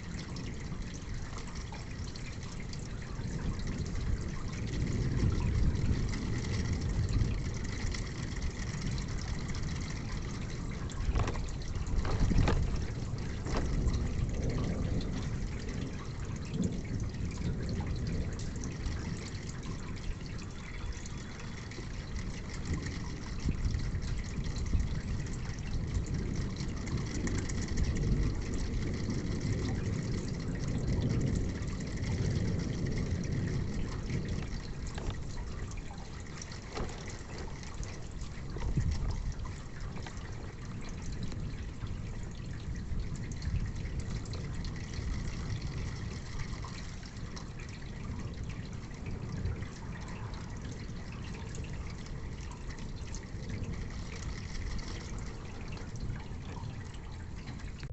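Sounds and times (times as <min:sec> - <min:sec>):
rain falling: 0:00.0 - 0:57.9
water running and dripping: 0:00.0 - 0:57.9
sharp splashes or knocks: 0:11.0 - 0:14.3.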